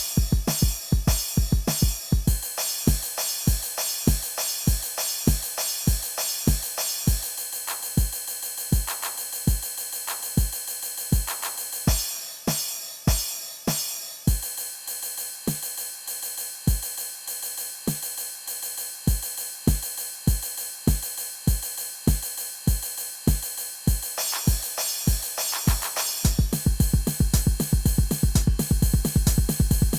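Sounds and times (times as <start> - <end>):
kick drum: 0.0 - 7.2, 8.8 - 9.7, 11.2 - 12.1, 14.3 - 14.5, 19.1 - 29.9
snare or tom hits: 0.0 - 8.1, 8.8 - 10.5, 11.2 - 13.9, 23.3 - 29.9
fast hi-hats: 0.0 - 29.9.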